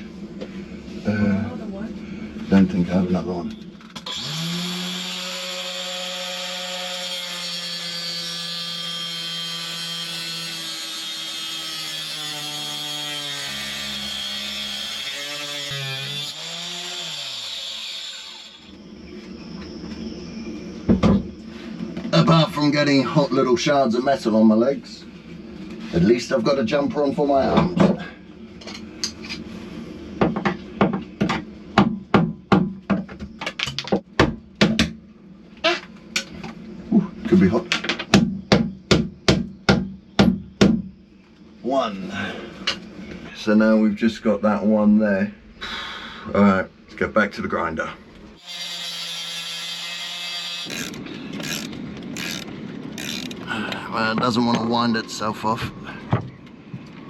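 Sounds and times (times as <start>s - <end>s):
angle grinder cutting metal: 4.0s - 18.7s, 48.4s - 53.4s.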